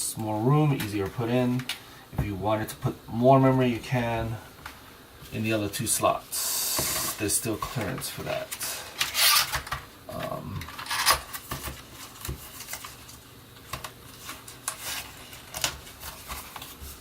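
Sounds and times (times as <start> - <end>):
clicks and rustles of handling: 6.8 - 17.0.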